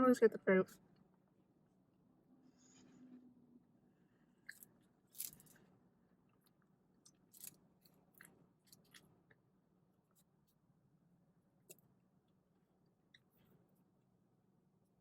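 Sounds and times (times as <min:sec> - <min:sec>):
faint low hum: 0:00.0 - 0:15.0
person chewing: 0:04.4 - 0:05.6, 0:07.0 - 0:09.0.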